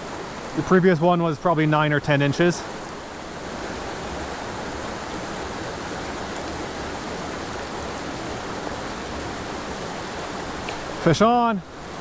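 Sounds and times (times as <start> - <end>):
creek rushing over rocks: 0.0 - 12.0.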